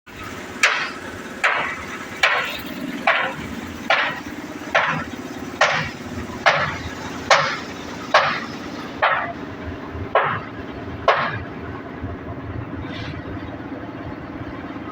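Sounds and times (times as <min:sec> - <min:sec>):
steady mechanical hum: 0:00.1 - 0:14.9
hammer striking metal: 0:00.5 - 0:09.5, 0:10.1 - 0:11.6.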